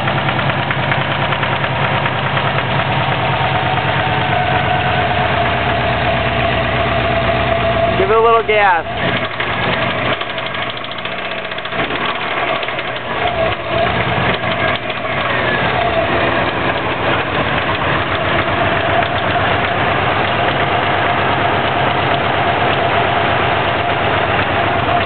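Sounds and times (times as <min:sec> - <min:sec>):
car engine with heavy knock: 0:00.0 - 0:25.0.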